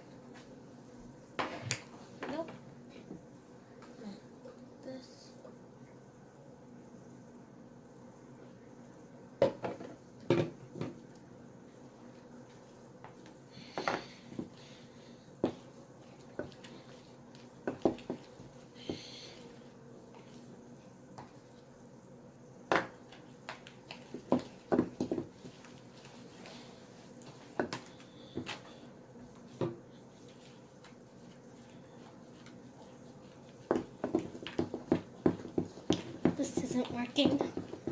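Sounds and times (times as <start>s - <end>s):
wooden spoon knocking on bowl: 33.7s - 37.9s.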